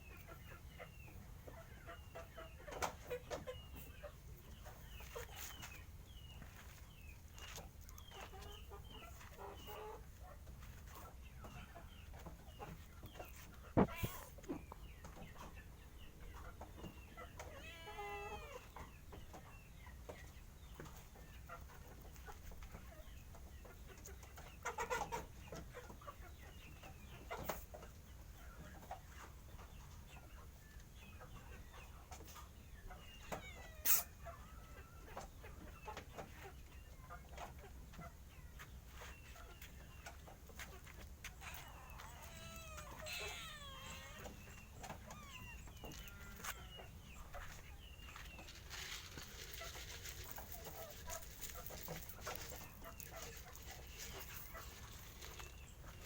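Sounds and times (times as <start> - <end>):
cats meowing: 13.8 - 14.4, 17.4 - 18.7, 33.0 - 34.7, 41.4 - 46.9
short chirping animal calls: 33.2 - 34.3, 41.4 - 46.9.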